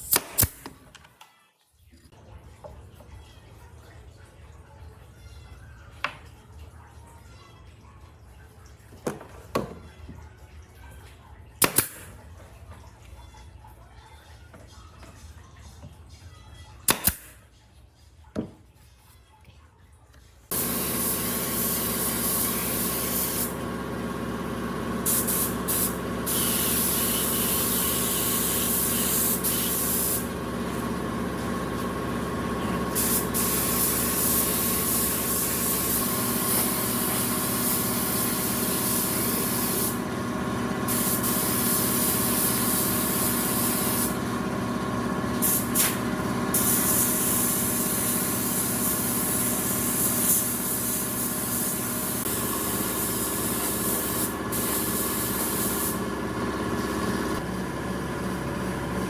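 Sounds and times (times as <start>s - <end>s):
loud hiss: 20.5s - 23.6s, 25.0s - 30.3s, 32.9s - 40.0s, 40.9s - 44.2s, 45.4s - 56.0s
machine motor humming: 20.5s - 59.0s.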